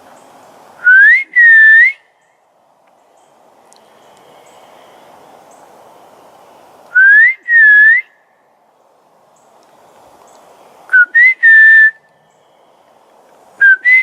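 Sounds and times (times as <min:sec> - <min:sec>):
person whistling two notes: 0:07.0 - 0:08.1, 0:10.9 - 0:11.9, 0:13.6 - 0:14.0.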